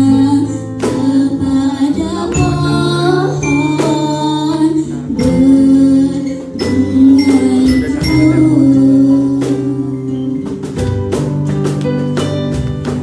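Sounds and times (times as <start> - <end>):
person singing: 0.0 - 10.8
instrumental accompaniment: 0.0 - 13.0.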